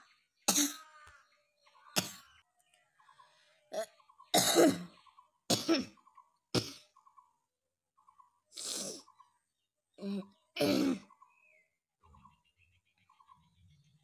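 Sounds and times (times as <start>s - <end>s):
person coughing: 4.4s - 4.9s.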